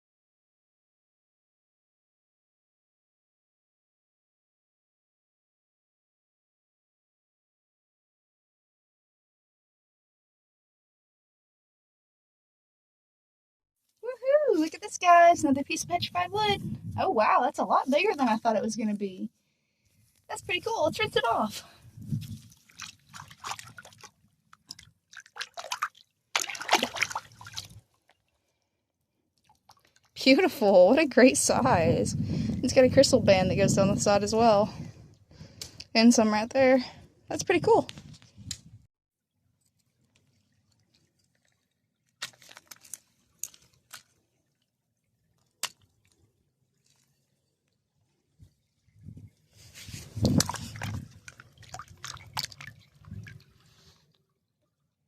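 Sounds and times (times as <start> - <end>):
water splashing and sloshing: 19.9 - 30.5, 39.5 - 55.0
faint wet squishing: 22.1 - 28.6, 29.4 - 30.2, 39.6 - 48.2, 49.9 - 54.2
stones clicking in water: 41.3 - 44.2, 45.4 - 46.2, 50.2 - 52.8.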